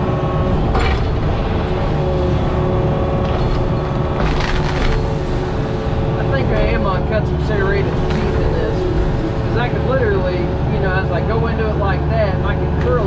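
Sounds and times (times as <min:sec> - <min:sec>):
diesel engine running under load: 0:00.0 - 0:13.0
wood cracking and splintering: 0:03.1 - 0:09.7.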